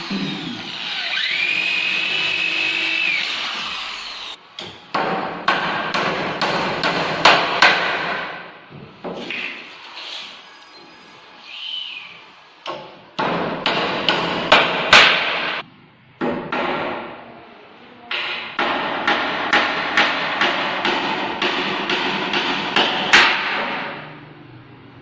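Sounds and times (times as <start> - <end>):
hammer striking wood: 4.6 - 8.4, 12.7 - 15.6, 16.2 - 17.1, 18.1 - 24.0.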